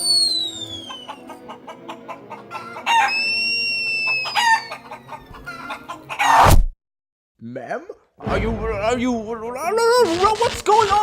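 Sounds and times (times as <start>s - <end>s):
rooster crowing: 2.5s - 6.4s.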